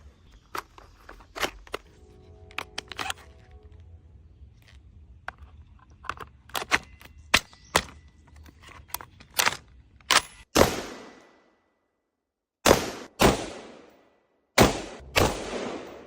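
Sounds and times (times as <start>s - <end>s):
gunshots: 10.6s - 11.3s, 12.6s - 14.0s, 14.6s - 16.0s.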